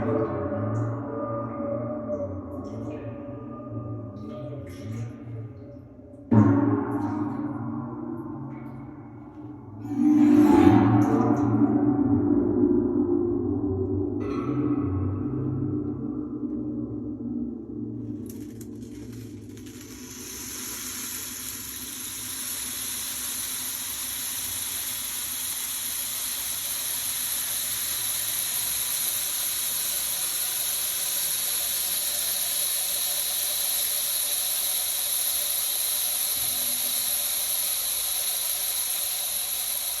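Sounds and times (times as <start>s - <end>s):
waterphone high squeal: 0.0s - 6.1s, 9.8s - 12.3s.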